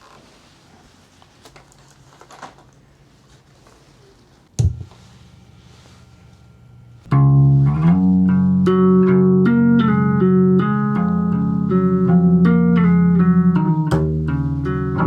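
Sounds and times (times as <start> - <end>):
low steady hum: 4.0 - 15.0
electric string instrument notes: 6.7 - 15.0.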